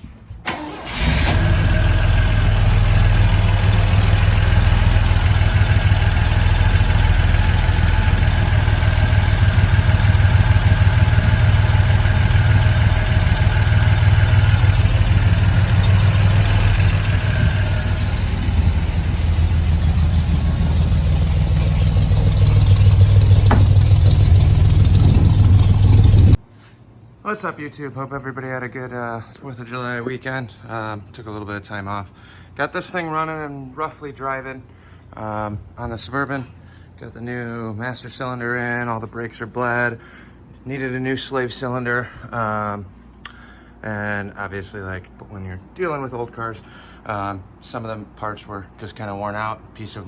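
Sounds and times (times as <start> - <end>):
engine starting and idling: 0.4 - 26.4.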